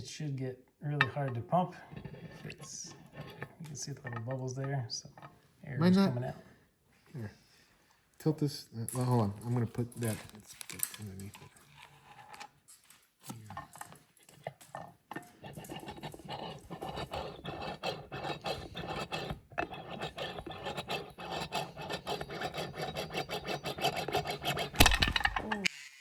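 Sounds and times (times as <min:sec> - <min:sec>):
rasping squishing pump strokes: 0:14.3 - 0:25.7.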